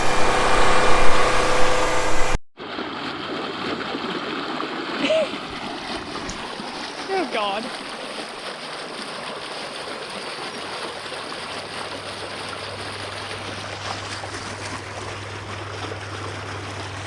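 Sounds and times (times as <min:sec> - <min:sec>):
low steady hum: 0:00.0 - 0:02.4
water rushing through a tube: 0:00.0 - 0:17.0.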